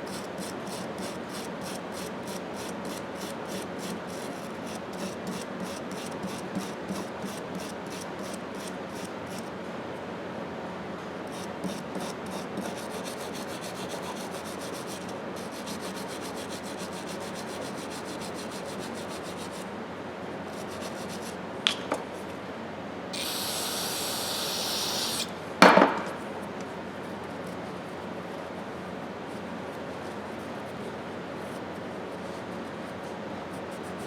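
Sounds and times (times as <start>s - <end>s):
hand scrubbing metal part: 23.2s - 25.3s
hiss: 23.2s - 25.3s.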